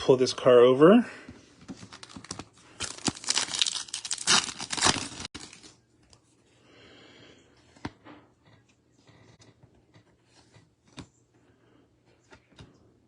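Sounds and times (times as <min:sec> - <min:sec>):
wrapper tearing and crinkling: 0:01.9 - 0:05.7.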